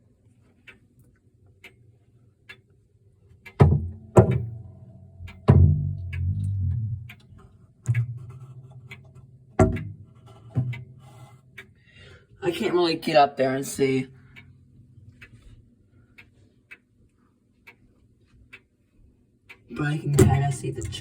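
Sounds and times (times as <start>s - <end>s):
clock ticking: 0.0s - 0.8s, 1.5s - 21.0s
knocks inside clock case: 9.6s - 10.0s.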